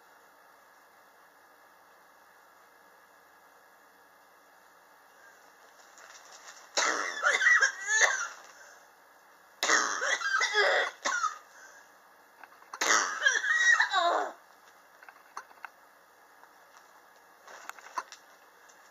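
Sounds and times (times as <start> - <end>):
person coughing: 6.8 - 8.4, 9.6 - 11.4.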